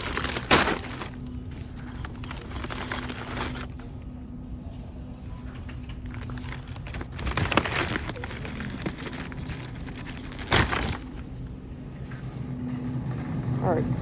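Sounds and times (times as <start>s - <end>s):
plastic shrink-wrap crinkling: 0.0s - 3.8s, 5.4s - 11.4s.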